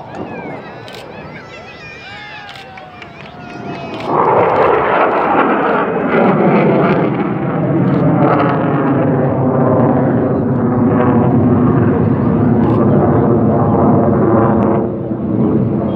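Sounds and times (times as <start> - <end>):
jet engine roar: 0.0 - 15.9.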